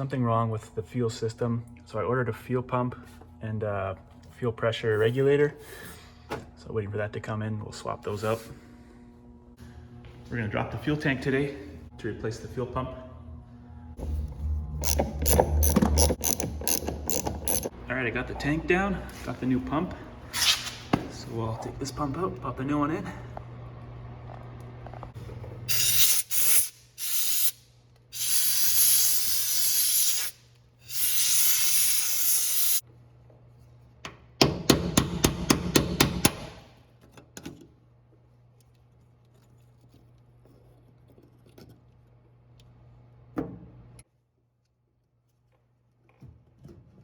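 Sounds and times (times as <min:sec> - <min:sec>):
aerosol can spraying: 0:25.7 - 0:27.6, 0:28.2 - 0:32.8.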